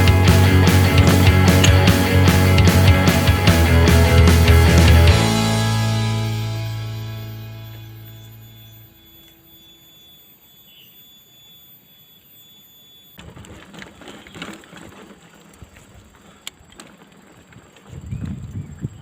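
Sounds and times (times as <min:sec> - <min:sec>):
background music: 0:00.0 - 0:08.4
faint steady high tone: 0:06.1 - 0:13.2.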